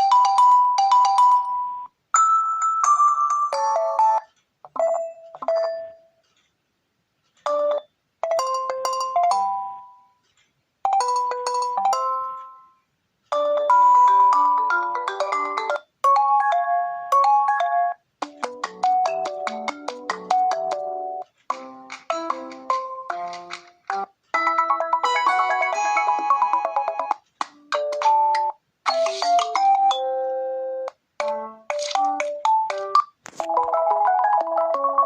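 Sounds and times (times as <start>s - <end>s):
phone ringtone melody: 0.0s - 6.2s, 7.5s - 10.1s, 10.9s - 35.0s.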